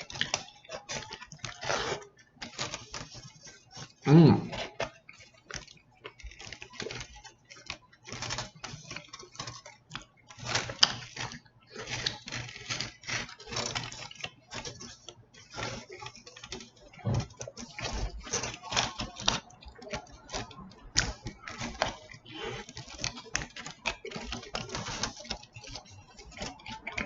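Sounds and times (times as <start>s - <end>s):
wet mouth eating noises: 4.0s - 7.0s.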